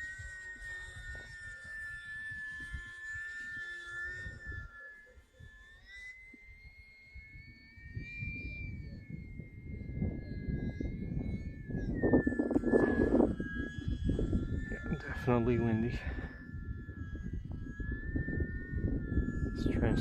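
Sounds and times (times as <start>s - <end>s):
wind rumbling on microphone: 0.0s - 4.8s, 6.5s - 20.0s
electric motor and propeller whining: 0.0s - 20.0s.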